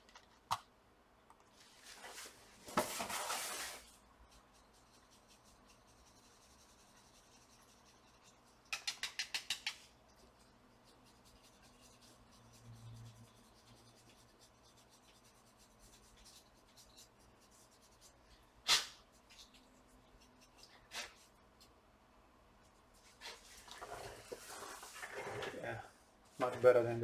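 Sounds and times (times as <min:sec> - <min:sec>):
brush scrubbing fan: 0:23.2 - 0:25.6.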